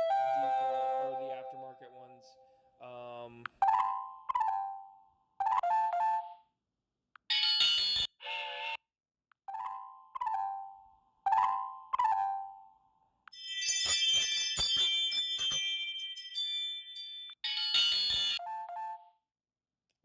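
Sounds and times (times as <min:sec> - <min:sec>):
bright short ringing tones: 0:13.3 - 0:18.4
dense jingling tone: 0:13.4 - 0:17.3
ding-dong doorbell chime: 0:13.4 - 0:18.4.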